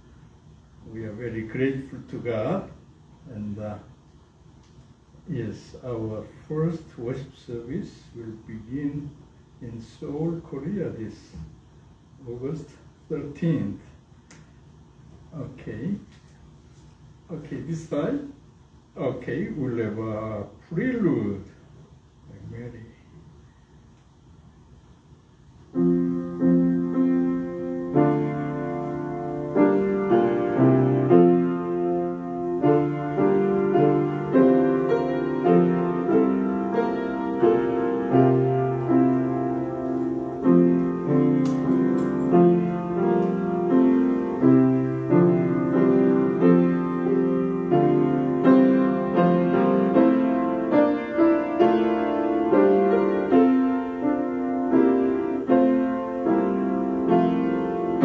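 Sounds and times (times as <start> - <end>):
slow solo piano chords: 25.7 - 58.0.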